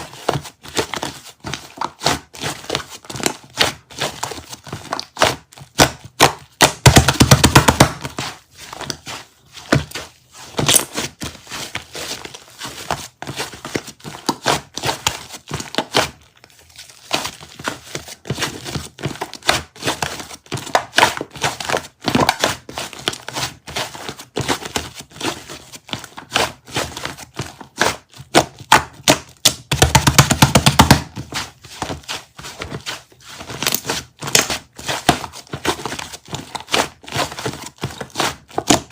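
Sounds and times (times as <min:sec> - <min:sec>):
rapid clicks and taps: 0:06.2 - 0:08.1, 0:28.7 - 0:31.1.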